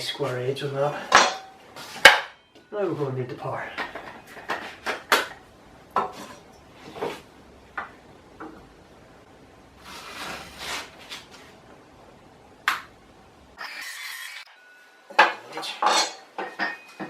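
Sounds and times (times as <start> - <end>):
scraping sliding rub: 9.8 - 11.6.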